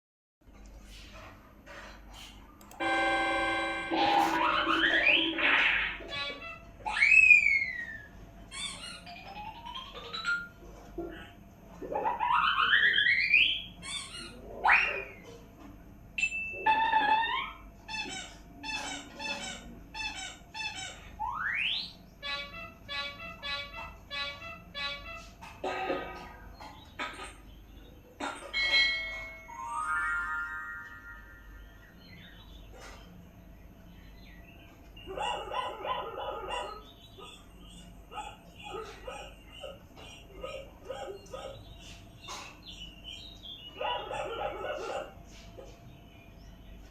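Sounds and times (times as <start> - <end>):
held electronic tone: 2.7 - 5.4.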